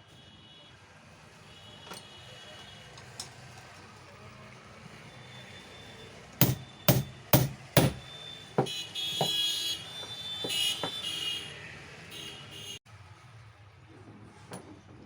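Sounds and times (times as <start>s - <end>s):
hammer blows on metal: 6.4s - 9.4s.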